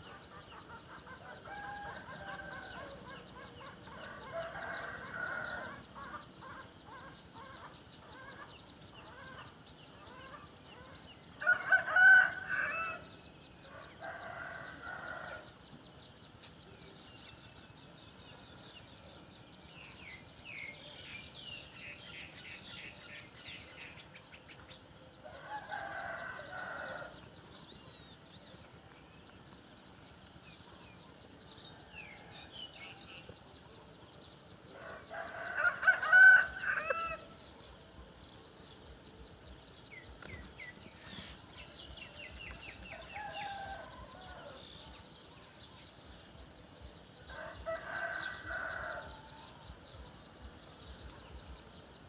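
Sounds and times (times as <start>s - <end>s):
rooster crowing: 1.3s - 3.1s, 4.0s - 5.8s, 11.4s - 13.1s, 13.7s - 15.5s, 25.3s - 27.2s, 34.8s - 37.3s, 42.9s - 44.6s, 47.3s - 49.6s
small birds chirping: 25.7s - 52.0s.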